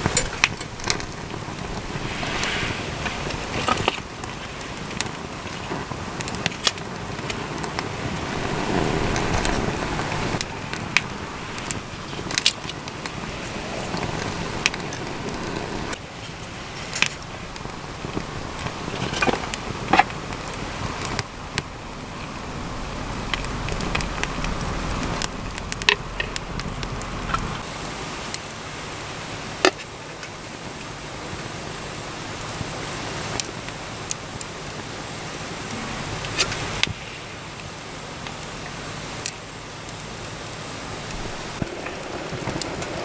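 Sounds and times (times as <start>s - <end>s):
wood fire crackling: 0.0s - 43.0s.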